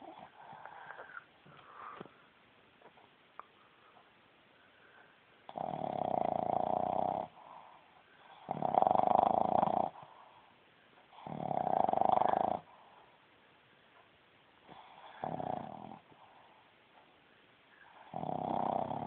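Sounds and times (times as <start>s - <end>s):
dog snoring loudly: 5.5s - 7.6s, 8.2s - 10.1s, 11.1s - 12.7s, 14.7s - 16.1s, 17.8s - 19.0s.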